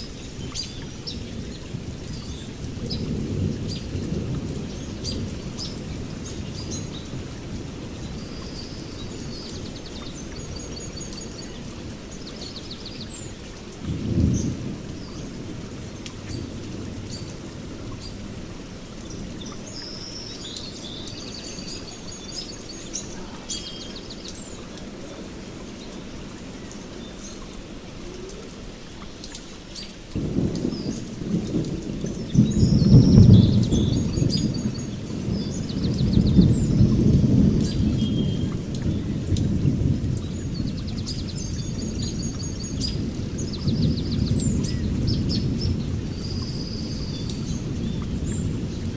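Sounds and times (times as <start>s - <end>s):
birds chirping: 0.0s - 48.9s
steady rain: 0.0s - 48.9s
thunder rumbling: 13.8s - 19.6s, 30.1s - 48.9s.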